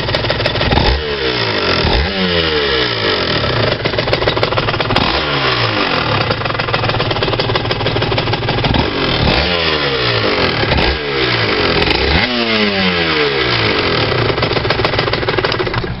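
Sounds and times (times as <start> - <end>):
two-stroke engine revving: 0.0 - 16.0.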